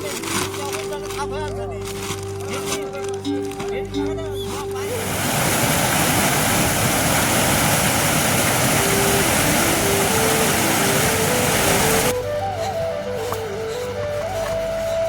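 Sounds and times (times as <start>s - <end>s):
flute-like melody: 0.1s - 6.6s, 8.0s - 15.0s
fast-flowing water rushing: 4.8s - 15.0s.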